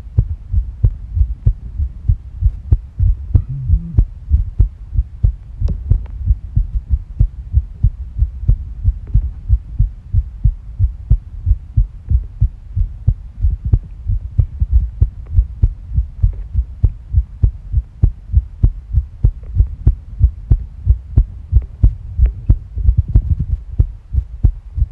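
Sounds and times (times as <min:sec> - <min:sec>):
rapid heartbeat thumps: 0:00.0 - 0:24.9.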